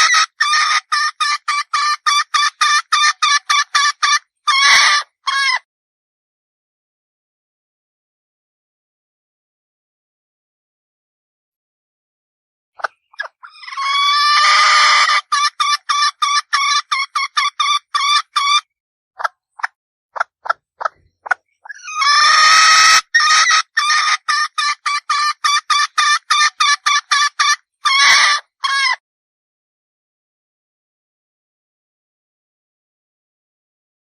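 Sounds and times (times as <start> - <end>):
hen calling and clucking: 0.0 - 5.6, 12.8 - 29.0.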